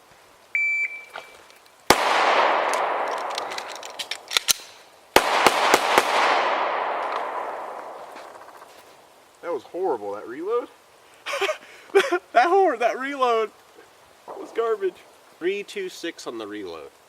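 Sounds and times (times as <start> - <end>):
shot timer beep: 0.6 - 1.3
pistol shot echoing: 1.9 - 4.0, 5.2 - 8.0
magazine reload clicks: 2.6 - 4.8.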